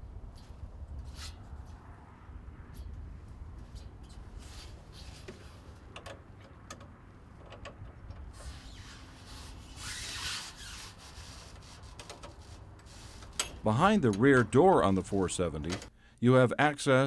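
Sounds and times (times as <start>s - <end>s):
low steady rumble: 0.0s - 9.7s
metal door scraping: 8.3s - 13.6s.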